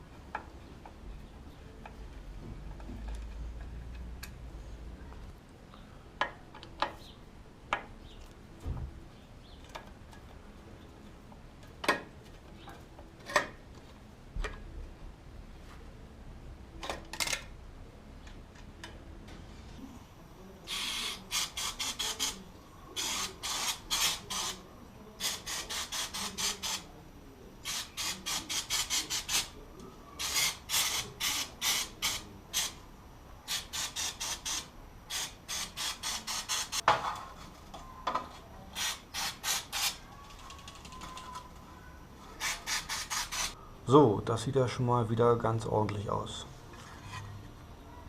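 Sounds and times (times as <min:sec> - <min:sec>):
ratchet wrench clicking: 0:20.7 - 0:22.4, 0:23.0 - 0:24.6, 0:27.6 - 0:29.5, 0:30.2 - 0:32.8.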